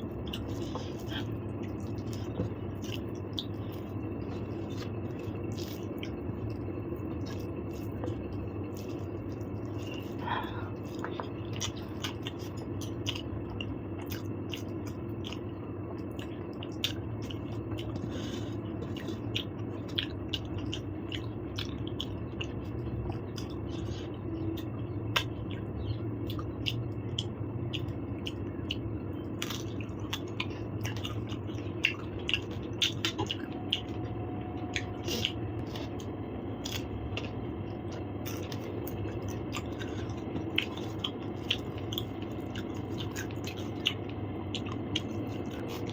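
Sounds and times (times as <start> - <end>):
low background hum: 0.0 - 45.9
person chewing soft food: 0.0 - 45.9.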